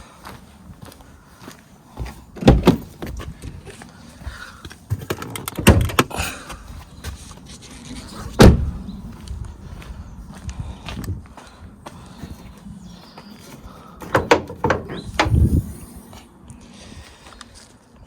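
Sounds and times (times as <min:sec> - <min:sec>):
car door and bonnet clunks: 0:02.4 - 0:03.5, 0:04.9 - 0:06.1, 0:08.3 - 0:08.8, 0:14.0 - 0:15.7.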